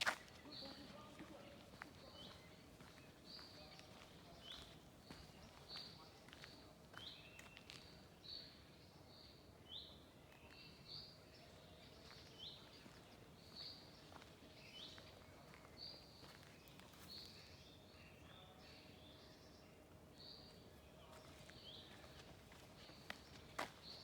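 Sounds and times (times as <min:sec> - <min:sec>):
faint songbird chirping: 0:00.0 - 0:24.0.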